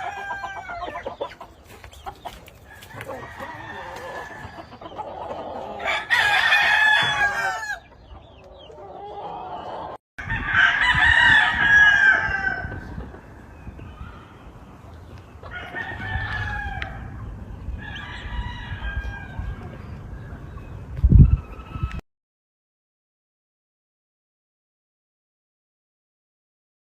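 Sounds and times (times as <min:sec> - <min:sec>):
distant roosters crowing: 0:00.0 - 0:01.4, 0:02.2 - 0:20.6
roosters crowing: 0:00.0 - 0:20.5.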